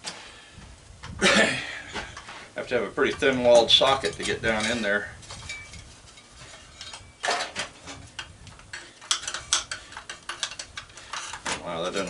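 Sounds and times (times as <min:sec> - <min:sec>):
metal clatter: 0:03.0 - 0:12.0.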